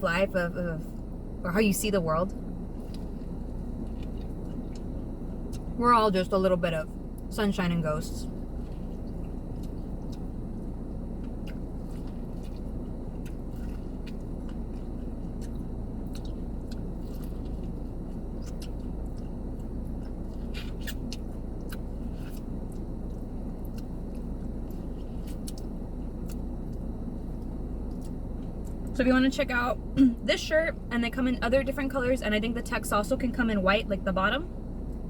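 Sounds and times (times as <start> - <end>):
steady low hum: 0.0 - 35.0
person chewing crispy food: 2.3 - 5.7, 8.4 - 28.9.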